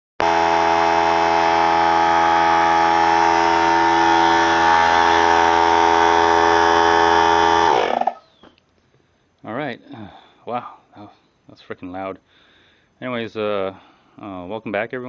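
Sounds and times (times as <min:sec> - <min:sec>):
air compressor buzzing hum: 0:00.2 - 0:08.4.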